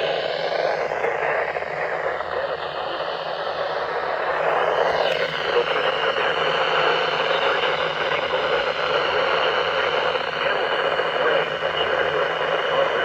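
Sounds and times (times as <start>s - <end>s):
radio static hiss: 9.5s - 13.0s.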